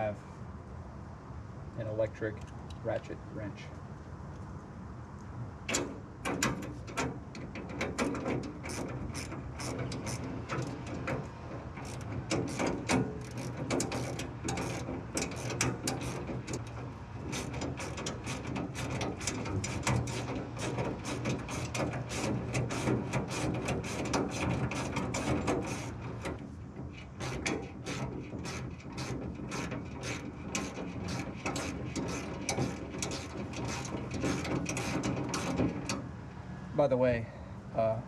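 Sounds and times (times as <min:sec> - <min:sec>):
ratchet wrench clicking: 0:11.8 - 0:26.0.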